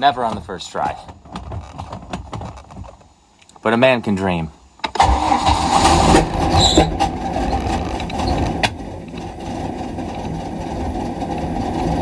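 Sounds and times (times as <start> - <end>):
boat engine idling: 5.8 - 12.0.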